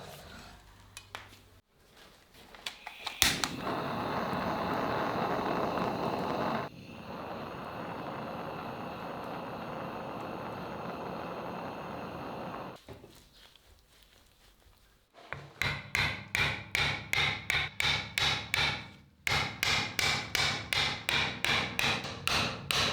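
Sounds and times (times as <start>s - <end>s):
power tool running: 3.3s - 12.8s.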